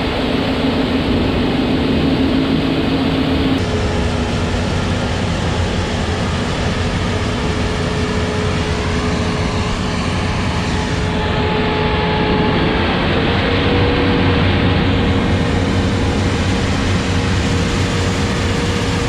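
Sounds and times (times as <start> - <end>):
steady whine: 0.0 - 19.0
tractor engine running: 14.1 - 19.0.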